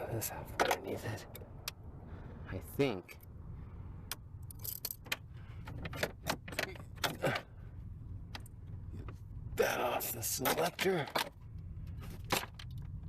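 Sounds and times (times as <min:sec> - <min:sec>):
steady low rumble: 0:00.0 - 0:13.0
tools and plastic trim rattling: 0:04.5 - 0:07.5.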